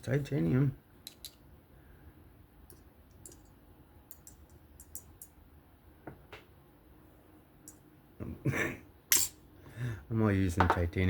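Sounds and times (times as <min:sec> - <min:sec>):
small metal parts clicking: 0:03.1 - 0:05.3.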